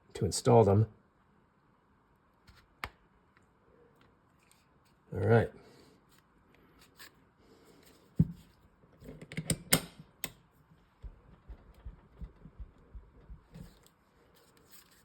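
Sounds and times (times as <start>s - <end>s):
soft repeated thumps: 11.0s - 13.8s.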